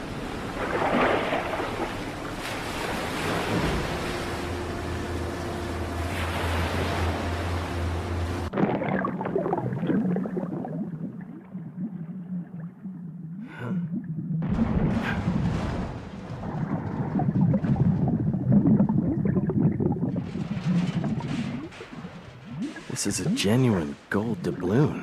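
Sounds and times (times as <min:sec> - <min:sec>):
steady low hum: 0:00.0 - 0:08.6
low rumbling underwater drone: 0:00.0 - 0:25.0
gurgling: 0:08.5 - 0:21.7.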